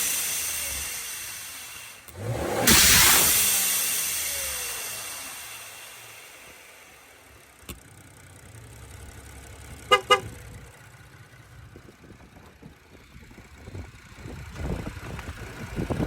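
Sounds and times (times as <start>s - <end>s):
low engine rumble: 0.0s - 16.0s
car horn toots: 9.8s - 10.4s.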